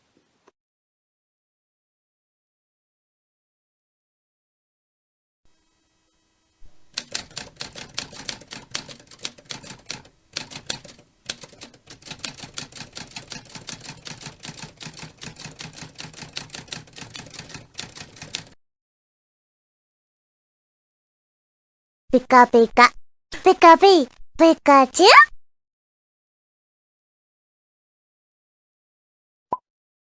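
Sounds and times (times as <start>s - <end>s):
rapid typing on keys: 6.9s - 18.6s.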